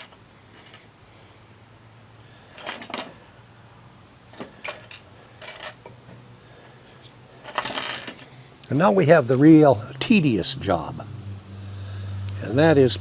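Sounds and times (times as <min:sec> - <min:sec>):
faint steady hum: 0:00.0 - 0:13.0
small metal parts clinking: 0:02.5 - 0:03.3, 0:04.3 - 0:06.0, 0:06.8 - 0:08.4.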